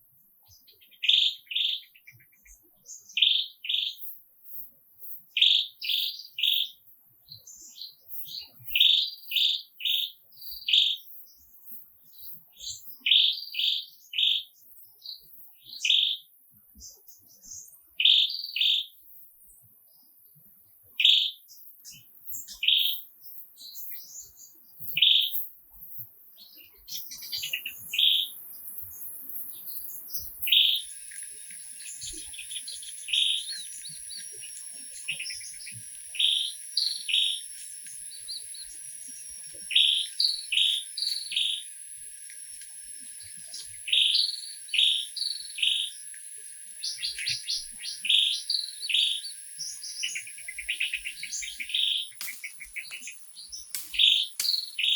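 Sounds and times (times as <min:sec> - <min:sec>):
birds chirping: 0:26.4 - 0:54.9
steady high hiss: 0:27.8 - 0:54.9.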